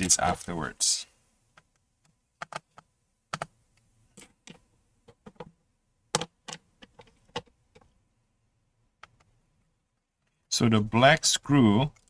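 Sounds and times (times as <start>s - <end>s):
tools clicking and tapping on laptop: 1.5s - 8.0s, 9.0s - 9.4s.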